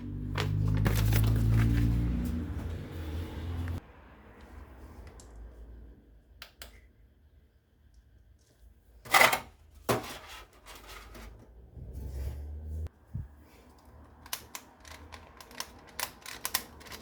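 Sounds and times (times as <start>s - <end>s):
packaging rustling: 0.4s - 2.0s.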